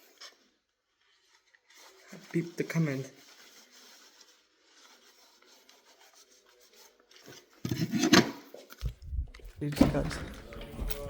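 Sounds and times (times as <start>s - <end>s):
rubbing scrape: 0.0s - 9.6s.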